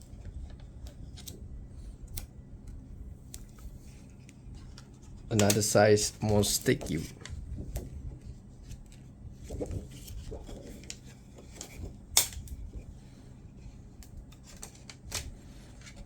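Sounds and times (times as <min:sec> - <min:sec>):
plastic film rustling: 0:05.2 - 0:11.1.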